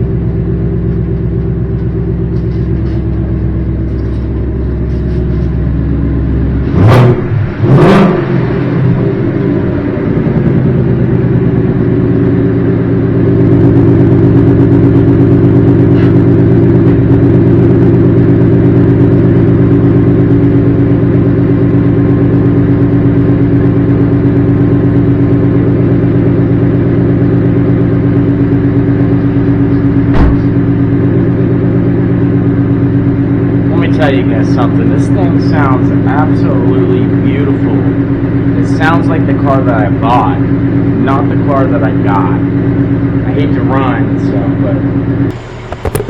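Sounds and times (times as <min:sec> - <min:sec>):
car engine idling: 0:00.0 - 0:46.0
engine knock: 0:10.3 - 0:46.0.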